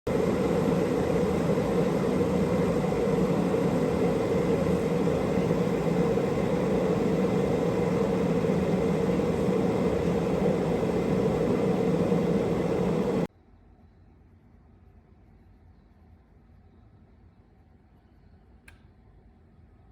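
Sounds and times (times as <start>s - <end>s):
electric kettle heating water: 0.1s - 13.3s.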